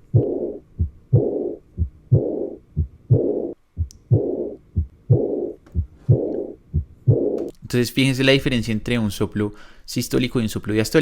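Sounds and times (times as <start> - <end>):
heartbeat thuds: 0.0 - 7.5
heart murmur rushing: 0.1 - 7.4.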